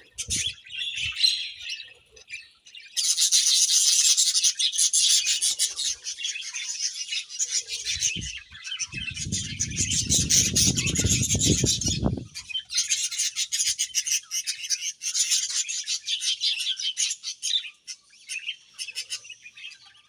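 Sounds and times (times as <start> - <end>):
budgerigars chattering: 0.0 - 20.0
low rumbling noise: 8.2 - 12.4.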